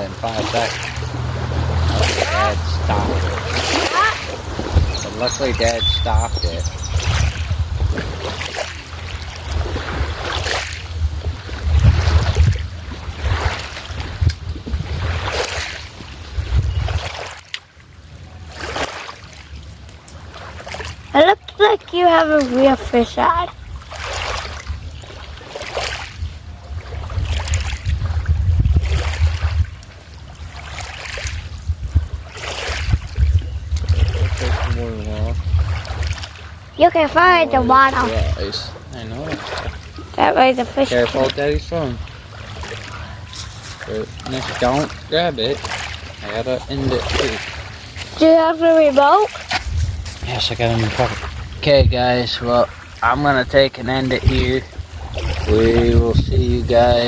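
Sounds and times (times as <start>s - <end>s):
gusty wind buffeting microphone: 0.0s - 17.1s, 26.1s - 29.9s, 31.4s - 45.2s, 46.1s - 57.0s.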